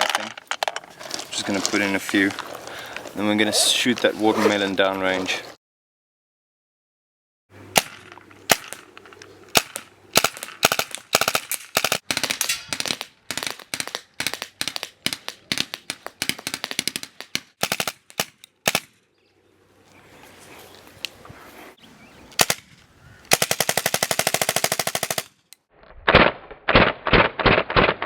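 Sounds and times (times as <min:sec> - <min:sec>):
paintball marker firing pops: 0:07.8 - 0:18.9.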